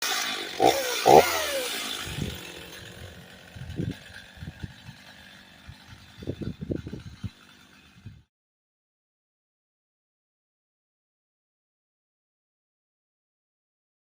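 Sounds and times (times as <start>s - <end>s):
chainsaw engine revving: 0.0s - 8.3s.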